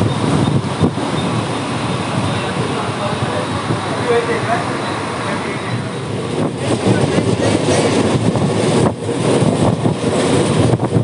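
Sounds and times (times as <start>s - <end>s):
train rattling on rails: 0.0s - 11.0s
voices: 2.0s - 8.1s.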